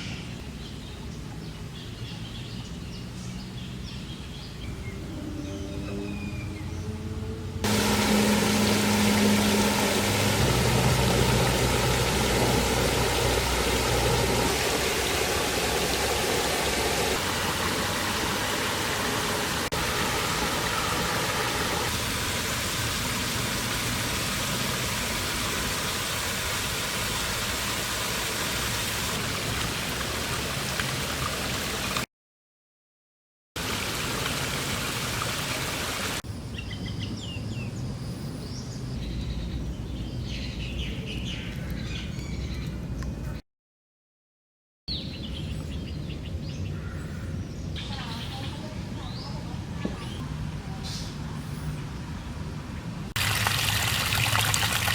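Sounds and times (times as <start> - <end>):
low engine hum: 4.6 - 27.4
rushing hiss of water: 7.6 - 32.1, 33.6 - 36.2, 53.2 - 54.9.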